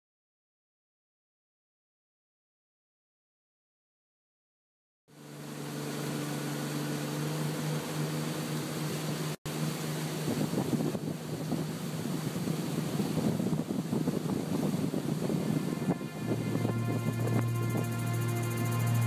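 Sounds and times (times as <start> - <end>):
motorboat engine running: 5.1 - 19.0
wind noise on microphone: 10.0 - 19.0.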